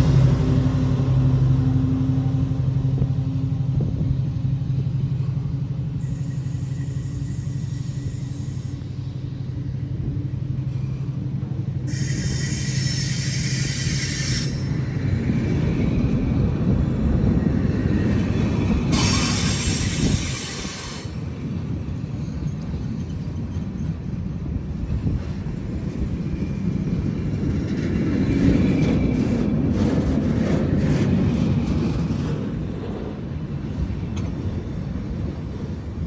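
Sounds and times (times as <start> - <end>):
train passing: 0.0 - 36.0.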